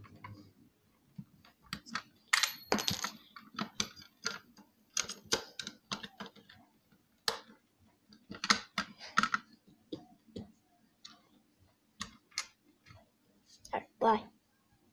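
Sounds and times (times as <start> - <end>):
clicks and taps of small objects: 1.2 - 11.2.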